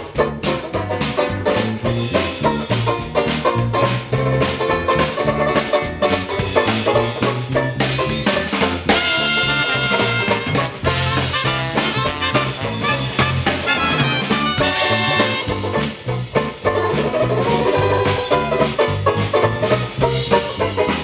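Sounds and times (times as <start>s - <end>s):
upbeat swing music: 0.0s - 21.0s.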